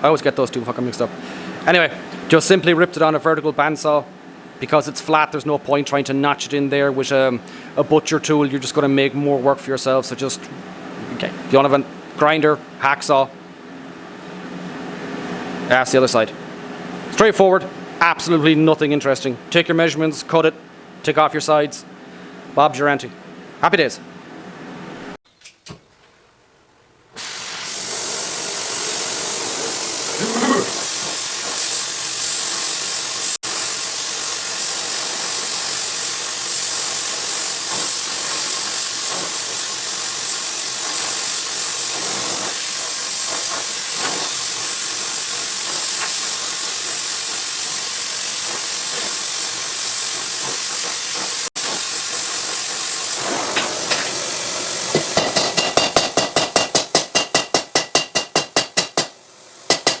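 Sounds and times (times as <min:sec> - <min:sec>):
machine hiss: 0:27.1 - 1:00.0.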